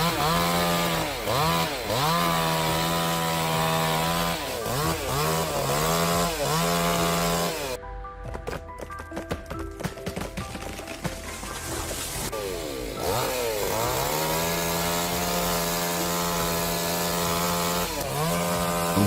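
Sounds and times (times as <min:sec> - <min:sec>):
chainsaw engine at high revs: 0:00.0 - 0:07.8, 0:12.3 - 0:19.0.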